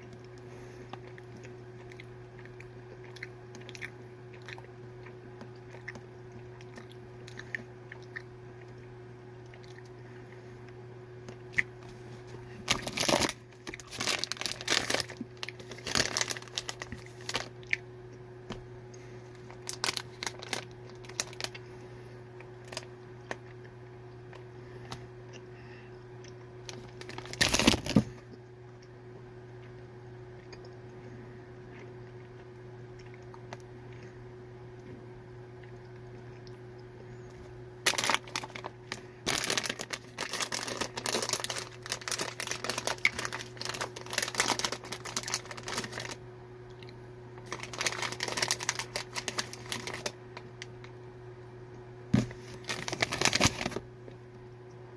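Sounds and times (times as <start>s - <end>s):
low steady hum: 0.0s - 54.9s
plastic pouches crinkling and tearing: 11.6s - 17.8s, 19.3s - 21.7s, 22.6s - 23.5s, 26.6s - 28.2s, 37.8s - 46.2s, 46.8s - 50.9s, 52.2s - 53.8s.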